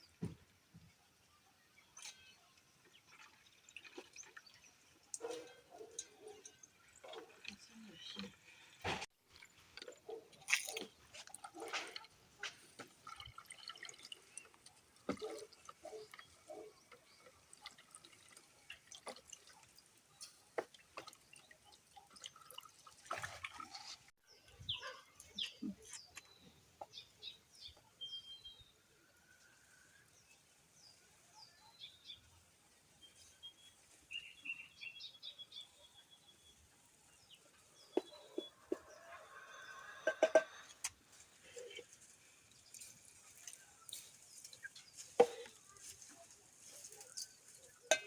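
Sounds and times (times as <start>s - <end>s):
water dripping and splashing: 2.8s - 8.5s, 9.3s - 24.1s, 42.0s - 48.0s.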